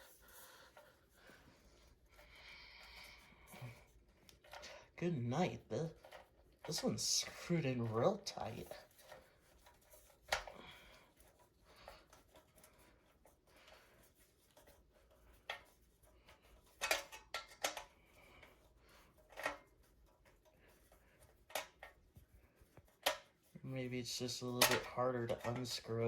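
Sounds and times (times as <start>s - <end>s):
screwdriver clicks and scrapes: 5.4s - 23.4s.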